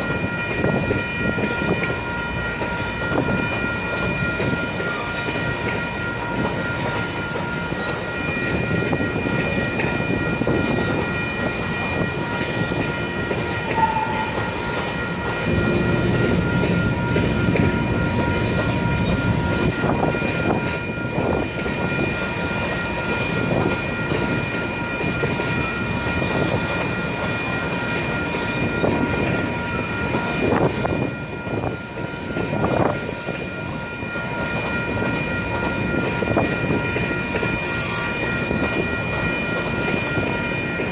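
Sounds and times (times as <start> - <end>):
train cars rumbling past: 0.0 - 40.9
high-pitched wheel squeal: 13.7 - 14.7, 39.8 - 40.5.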